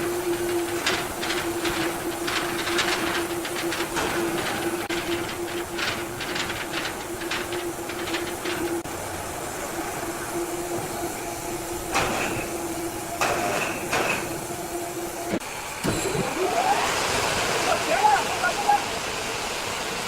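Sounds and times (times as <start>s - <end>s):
rattling clicks: 0.0s - 8.9s
sawmill machinery humming: 0.0s - 20.0s.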